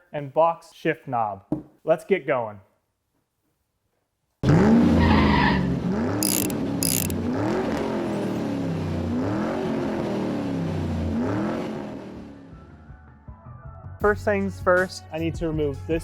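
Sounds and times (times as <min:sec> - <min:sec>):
short high screeches: 0:06.2 - 0:07.1.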